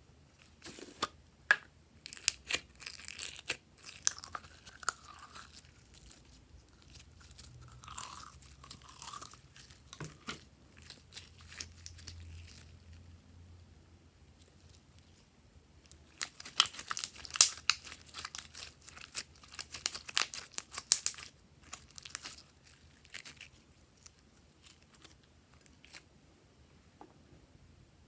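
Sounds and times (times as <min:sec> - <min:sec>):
slime crackling pops and clicks: 0:16.5 - 0:17.9.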